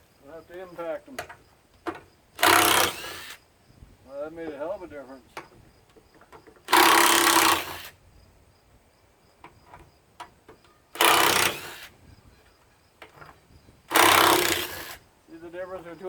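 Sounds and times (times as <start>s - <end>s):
handling clicks and knocks: 1.1s - 2.6s
impact driver hammering: 1.9s - 3.3s, 11.0s - 11.8s, 13.9s - 15.0s.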